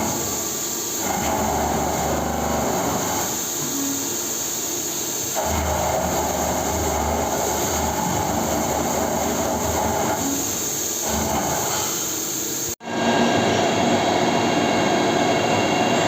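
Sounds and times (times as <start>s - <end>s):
milling machine running: 0.0s - 16.0s
cutter cutting material: 1.0s - 3.4s, 5.4s - 10.4s.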